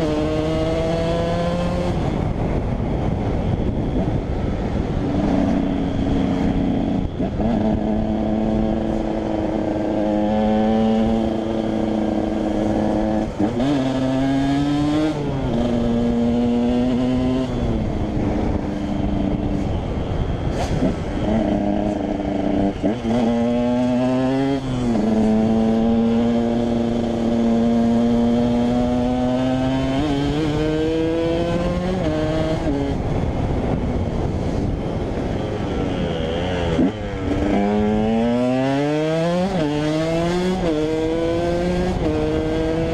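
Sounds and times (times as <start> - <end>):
motorcycle engine revving: 0.0 - 42.9.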